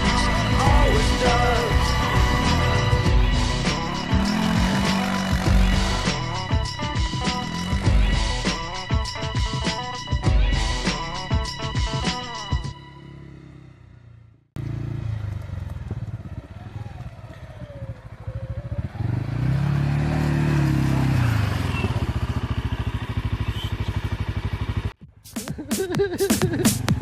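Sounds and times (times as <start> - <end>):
quad bike engine revving: 0.0 - 8.5, 13.1 - 25.0.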